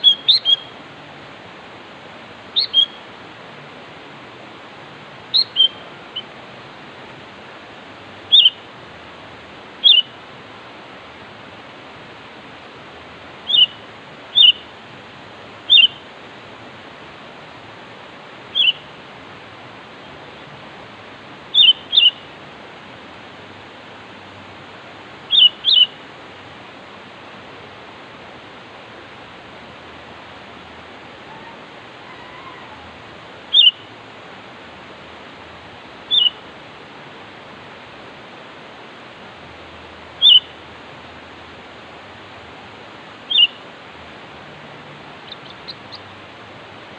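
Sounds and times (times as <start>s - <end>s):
bird giving sharp calls: 0.0s - 0.7s, 2.6s - 3.0s, 5.3s - 6.3s, 8.3s - 8.6s, 9.8s - 10.1s, 13.5s - 13.8s, 15.7s - 16.0s, 18.6s - 18.8s, 21.6s - 22.2s, 25.3s - 25.9s, 33.5s - 33.8s, 36.1s - 36.4s, 40.2s - 40.5s, 43.3s - 43.6s
steady hiss: 0.0s - 46.9s.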